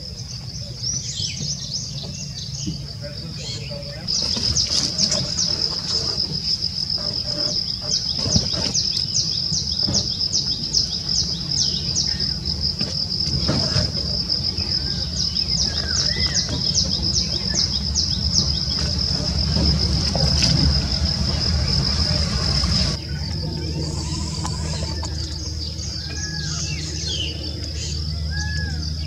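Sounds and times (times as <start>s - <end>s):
bird calls: 0.0s - 29.0s
high-pitched insect drone: 4.7s - 29.0s
low rumble: 17.0s - 28.0s.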